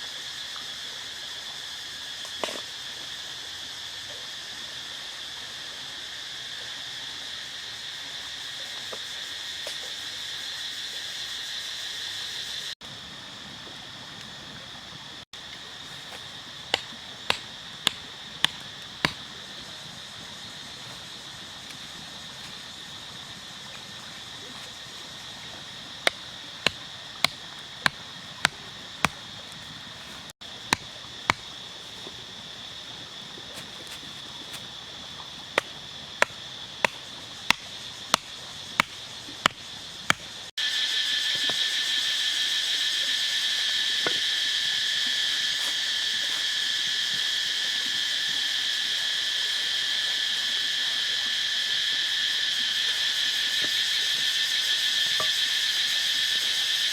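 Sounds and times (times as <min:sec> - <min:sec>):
insect chorus: 0:00.0 - 0:56.9
sharp evenly spaced knocks: 0:16.7 - 0:19.2, 0:38.2 - 0:40.2.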